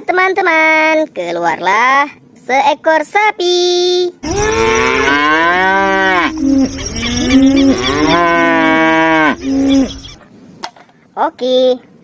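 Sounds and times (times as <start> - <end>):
cow mooing: 4.2 - 10.2.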